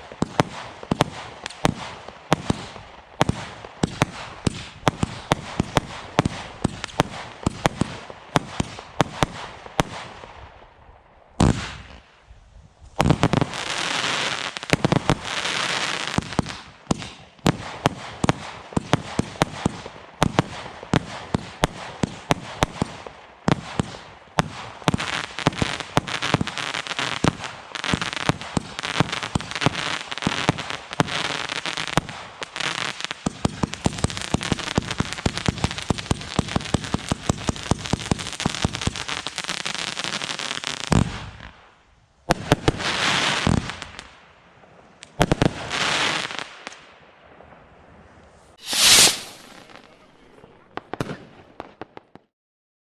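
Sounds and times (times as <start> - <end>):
fireworks launching and bursting: 0.0 - 10.5, 11.4 - 12.2, 12.8 - 47.6, 48.4 - 52.3
firework hiss: 48.6 - 50.0.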